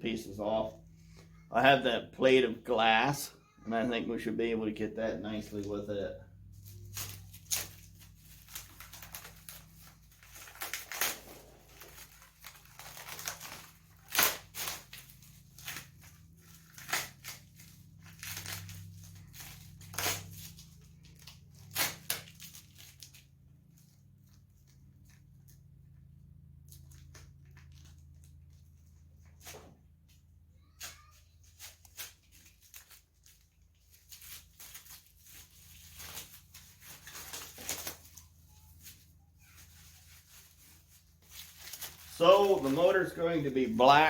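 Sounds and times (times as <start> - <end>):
paper crinkling: 6.5 - 25.8, 30.7 - 44.0
masking tape tearing: 6.7 - 23.2, 34.1 - 38.3.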